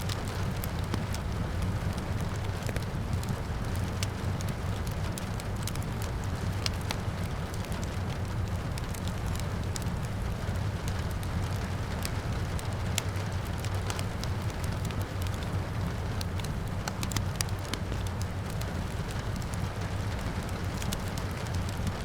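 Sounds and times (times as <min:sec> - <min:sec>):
rain falling: 0:00.0 - 0:22.0
wood fire crackling and popping: 0:00.0 - 0:22.0.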